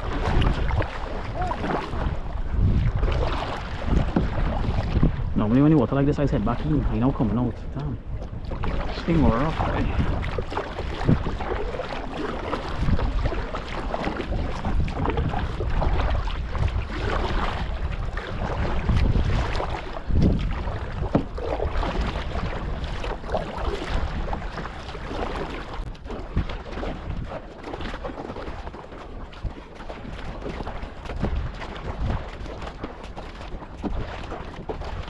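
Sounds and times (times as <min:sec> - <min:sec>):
water splashing against hull: 0:00.0 - 0:35.0
wind buffeting microphone: 0:00.0 - 0:35.0.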